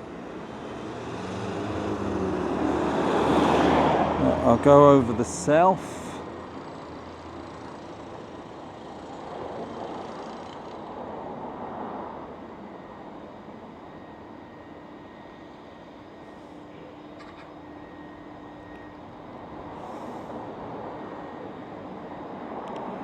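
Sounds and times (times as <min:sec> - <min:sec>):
distant traffic: 0:00.0 - 0:23.0
vehicle passing: 0:00.5 - 0:06.2.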